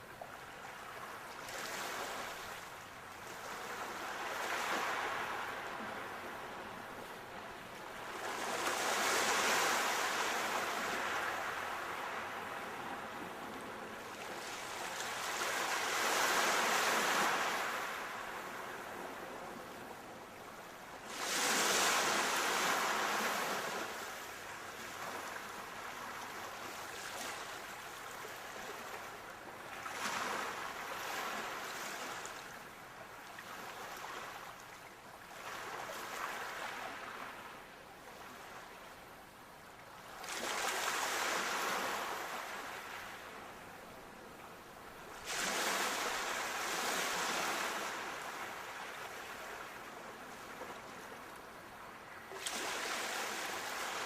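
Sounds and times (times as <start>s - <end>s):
sea waves breaking: 45.1s - 49.8s.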